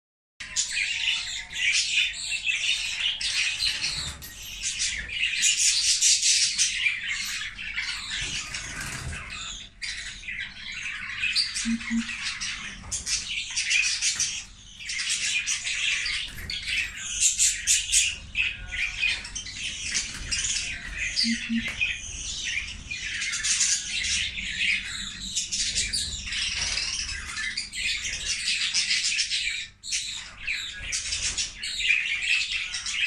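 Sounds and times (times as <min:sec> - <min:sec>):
budgerigars squawking: 0:20.4 - 0:28.2.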